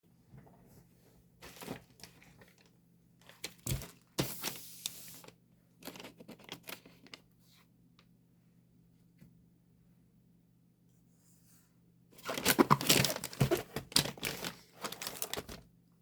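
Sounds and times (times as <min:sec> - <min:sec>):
plastic packaging crinkling: 0:12.2 - 0:15.6.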